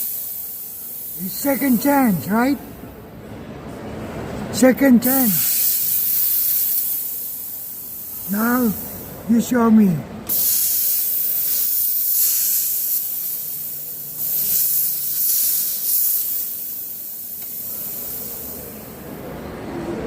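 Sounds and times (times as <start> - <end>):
steam cleaner hissing blasts: 0.0 - 2.6, 5.0 - 9.2, 10.3 - 19.2.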